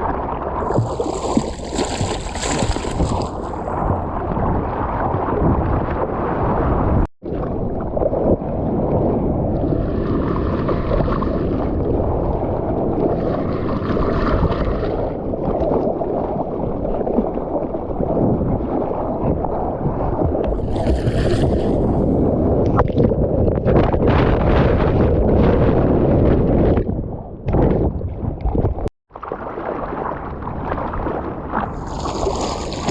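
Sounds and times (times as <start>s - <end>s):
water splashes: 0.0s - 8.6s, 9.6s - 23.2s, 29.1s - 32.9s
wind buffeting microphone: 0.0s - 28.9s, 29.6s - 32.9s
churning sea water: 0.0s - 32.9s.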